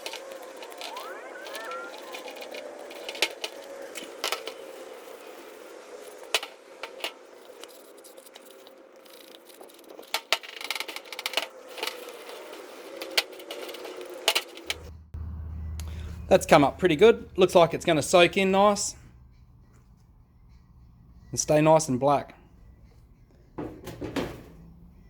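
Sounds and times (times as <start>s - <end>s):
faint steady hum: 14.8s - 21.6s.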